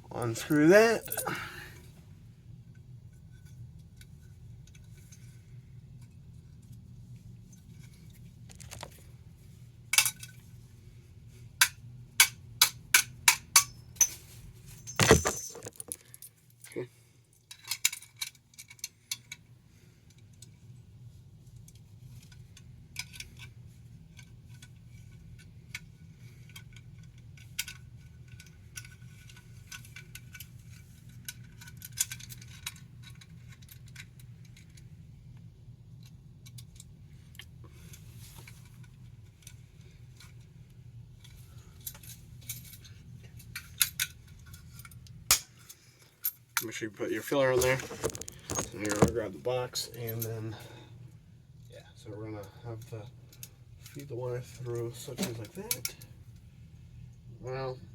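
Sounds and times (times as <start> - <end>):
steady low hum: 0.0 - 57.9
metallic clinks of tools handled: 13.5 - 16.3.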